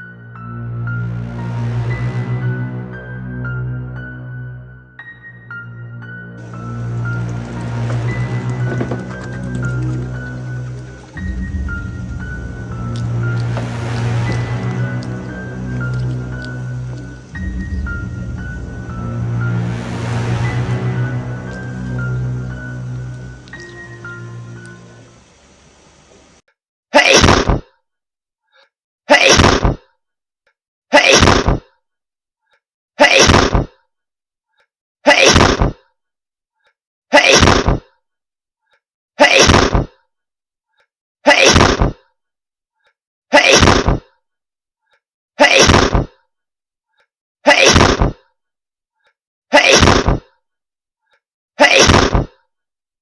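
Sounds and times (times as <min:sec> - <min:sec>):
hedgehog sneezing: 0:27.0 - 0:27.6, 0:29.1 - 0:29.8, 0:30.9 - 0:31.6, 0:33.0 - 0:33.6, 0:35.1 - 0:35.8, 0:37.1 - 0:37.8, 0:39.2 - 0:39.9, 0:41.3 - 0:42.0, 0:43.3 - 0:44.0, 0:45.4 - 0:46.1, 0:47.5 - 0:48.2, 0:49.5 - 0:50.2, 0:51.6 - 0:52.3.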